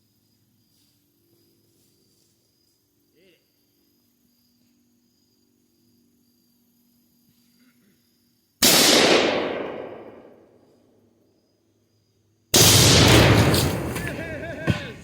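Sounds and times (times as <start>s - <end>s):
explosive blast: 12.6s - 15.0s.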